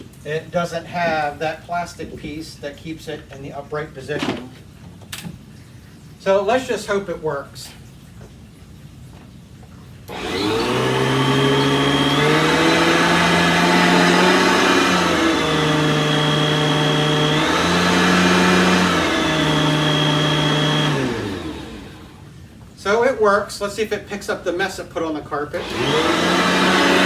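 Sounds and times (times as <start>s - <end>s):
vacuum cleaner motor running: 10.1s - 22.3s, 25.6s - 27.0s.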